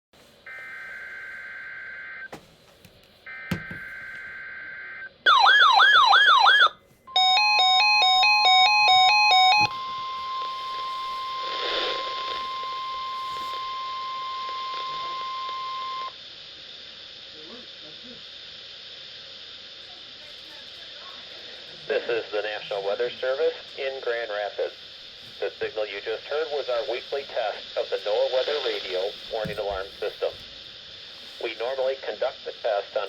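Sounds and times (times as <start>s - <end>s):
stepping multi-tone alarm: 0.4s - 2.3s, 3.3s - 16.2s
steady warning tone: 3.3s - 16.2s
warbling siren-like alert: 3.6s - 11.2s
steady electronic tones: 6.0s - 16.1s
radio static: 9.2s - 33.0s.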